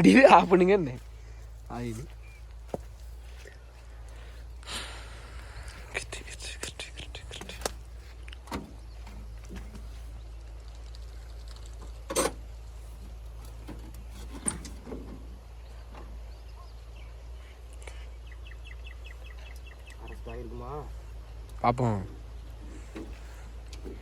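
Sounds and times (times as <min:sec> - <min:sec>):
rapid bird chirps: 0:04.8 - 0:11.4, 0:15.6 - 0:21.5.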